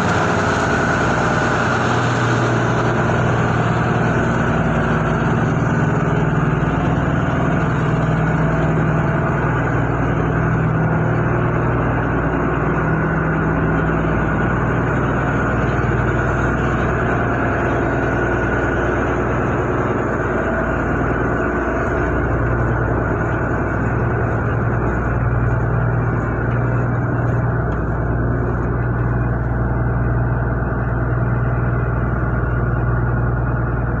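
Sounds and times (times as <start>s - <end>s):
low mechanical hum: 0.0s - 34.0s.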